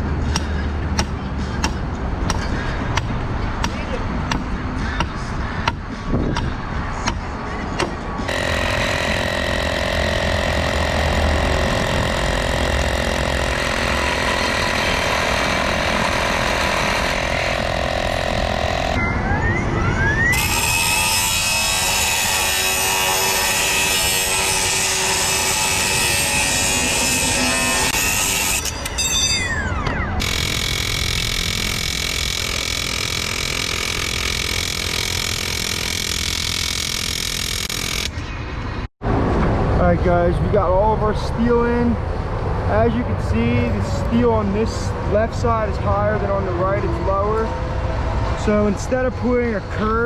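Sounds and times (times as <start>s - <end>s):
power tool motor whining: 8.3s - 19.0s, 20.3s - 38.2s.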